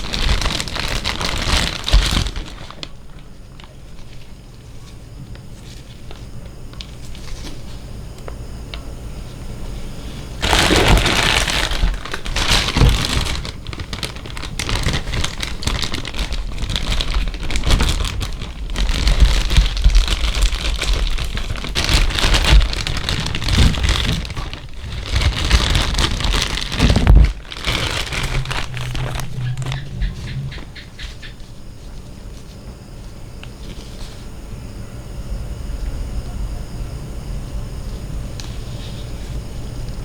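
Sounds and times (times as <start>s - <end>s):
plastic packaging crinkling: 0.0s - 8.0s, 10.3s - 30.6s.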